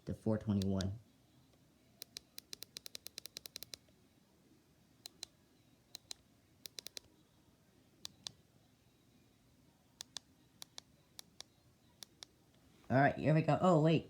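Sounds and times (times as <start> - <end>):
radio buttons clicking: 2.0 - 3.8, 6.0 - 7.1.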